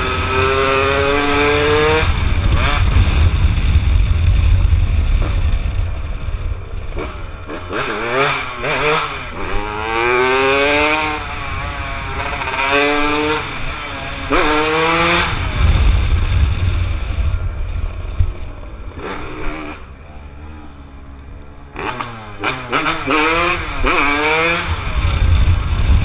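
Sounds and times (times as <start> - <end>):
engine revving: 0.0 - 3.8, 6.9 - 16.8, 18.9 - 26.0.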